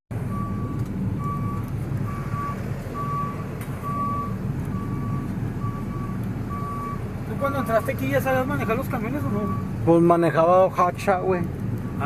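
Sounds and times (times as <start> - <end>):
truck reverse alarm beeping: 0.1 - 10.2, 11.8 - 12.0
truck engine running: 0.1 - 12.0.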